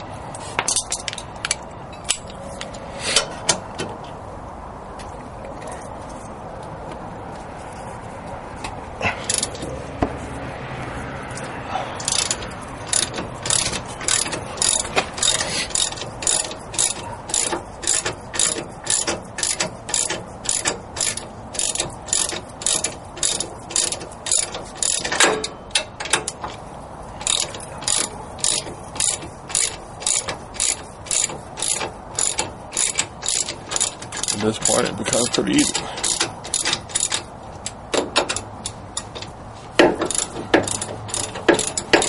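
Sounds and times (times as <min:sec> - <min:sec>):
ratchet wrench clicking: 0:09.2 - 0:09.8, 0:11.3 - 0:26.6, 0:27.2 - 0:42.0.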